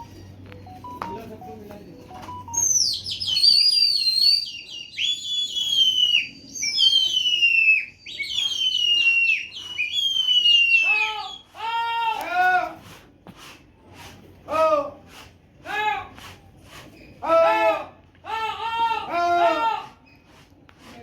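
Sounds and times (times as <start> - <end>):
bird whistling song: 2.4 - 11.5.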